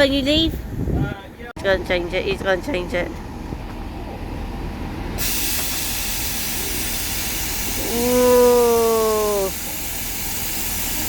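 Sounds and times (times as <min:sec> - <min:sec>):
train air release hiss: 0:05.2 - 0:11.0.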